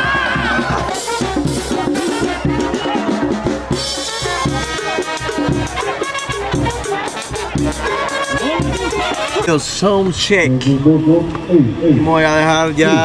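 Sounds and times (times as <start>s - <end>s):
instrumental cumbia music: 0.0s - 9.7s.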